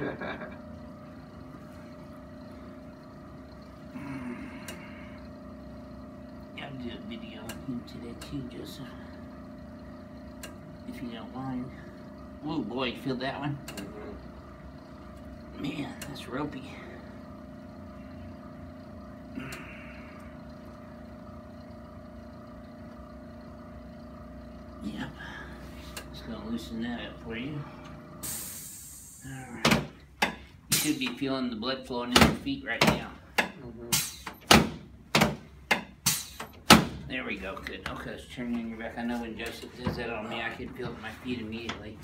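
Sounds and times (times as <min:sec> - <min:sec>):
low mechanical hum with whine: 0:00.0 - 0:42.0.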